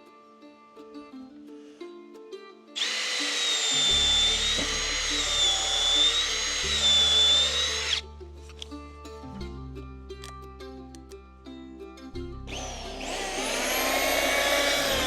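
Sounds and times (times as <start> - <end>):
music with plucked strings and bass: 0.0 - 15.0
power tool whining: 2.8 - 8.0, 12.5 - 15.0.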